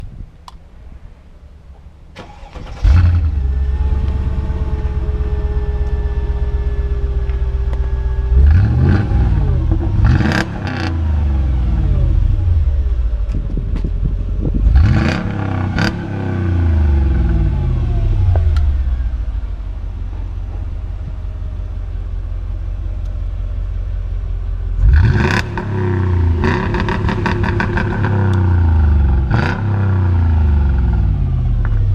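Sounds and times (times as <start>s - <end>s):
car engine starting and revving: 2.2s - 19.9s, 24.7s - 31.9s
exhaust crackles and pops: 30.7s - 31.9s.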